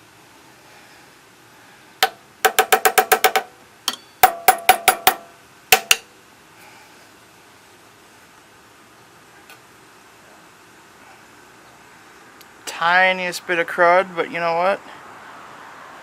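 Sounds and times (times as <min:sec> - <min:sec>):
metal part tapped ringing: 0:02.0 - 0:06.1.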